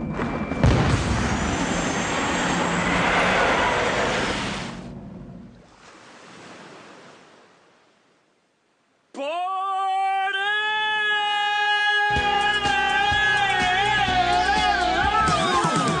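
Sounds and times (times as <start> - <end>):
rushing noise: 0.0 - 5.4.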